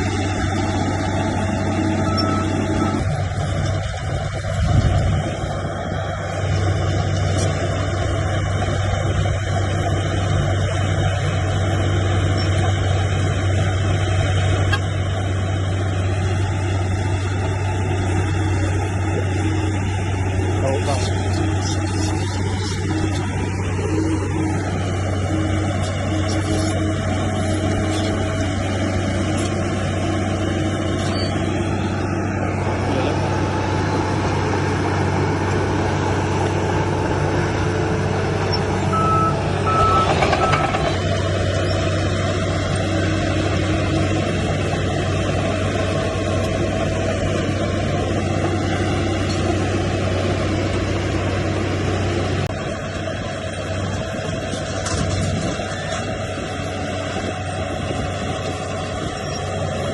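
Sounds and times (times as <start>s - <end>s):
bulldozer diesel engine: 0.0s - 59.9s
reversing alarm beeps: 1.9s - 3.1s, 38.9s - 40.8s.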